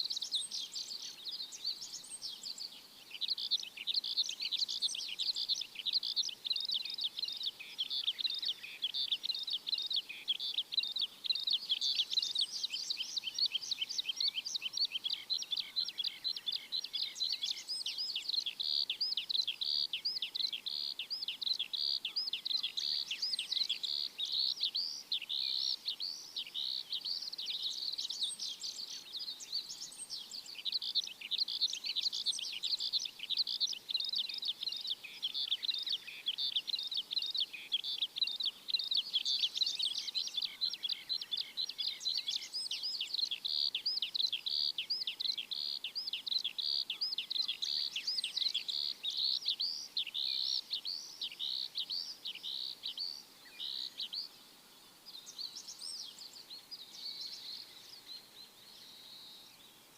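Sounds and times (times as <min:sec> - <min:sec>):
faint background hiss: 0:00.0 - 0:59.9
small birds chirping: 0:00.0 - 0:59.9.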